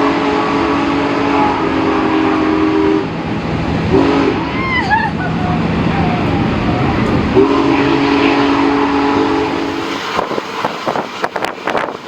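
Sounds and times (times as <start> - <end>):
steam whistle chord: 0.0 - 3.1, 7.3 - 10.2.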